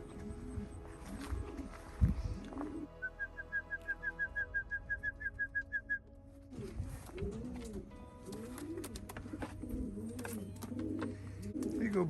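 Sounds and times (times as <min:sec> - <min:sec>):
pigeons cooing: 0:00.0 - 0:03.2, 0:06.5 - 0:12.0.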